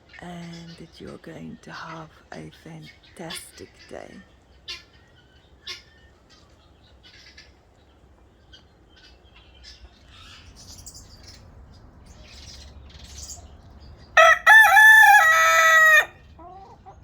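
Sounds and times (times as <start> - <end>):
faint bird chirps: 2.8 - 14.0
rooster crowing: 14.2 - 16.7.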